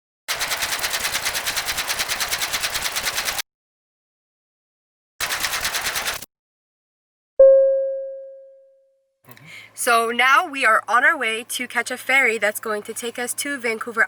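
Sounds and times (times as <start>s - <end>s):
rapid-fire sharp cracks: 0.3s - 3.4s, 5.2s - 6.3s.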